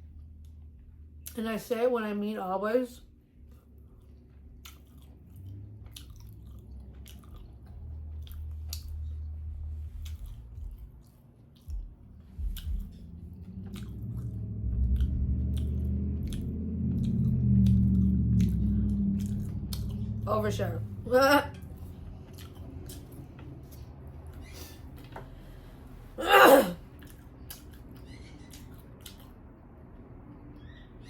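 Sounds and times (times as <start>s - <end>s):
person chewing food: 3.4s - 20.2s, 21.5s - 25.0s, 26.9s - 29.5s
mouth clicks: 13.6s - 20.2s.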